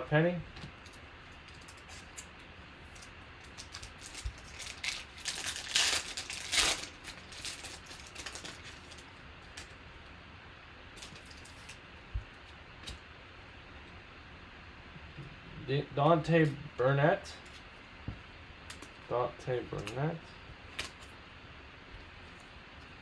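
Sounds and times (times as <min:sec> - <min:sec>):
wrapper crinkling and tearing: 0:02.9 - 0:09.7.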